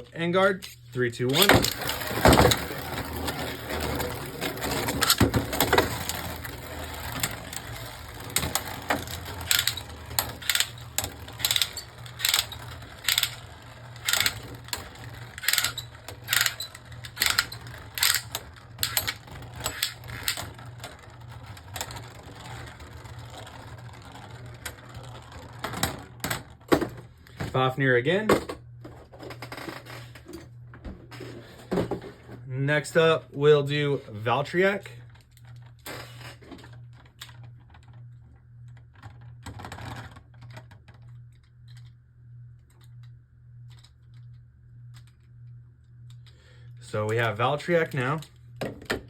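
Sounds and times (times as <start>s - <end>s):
spinning tops whirring: 0.0s - 26.7s.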